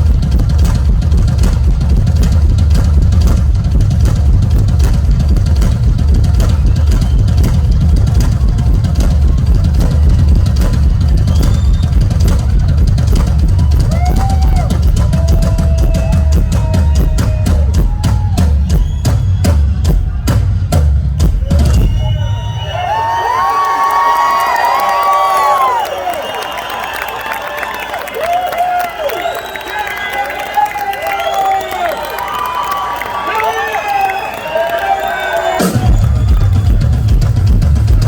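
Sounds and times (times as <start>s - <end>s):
drum kit solo: 0.0s - 23.0s, 35.6s - 38.0s.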